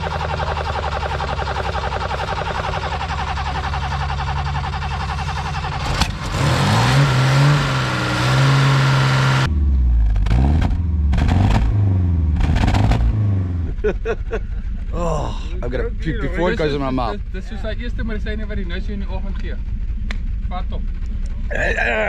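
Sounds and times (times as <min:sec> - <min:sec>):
engine revving: 0:00.0 - 0:21.9
car engine running: 0:00.0 - 0:22.0
deep low rumble: 0:09.4 - 0:22.0.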